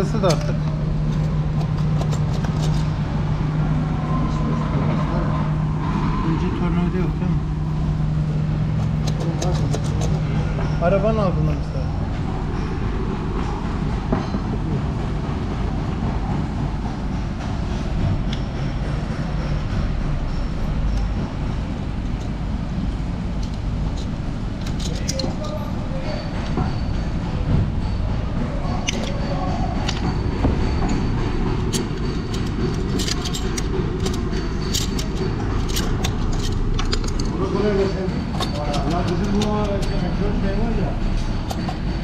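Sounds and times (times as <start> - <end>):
low mechanical rumble: 0.0 - 42.0
metallic clinks of hand tools: 28.6 - 40.3.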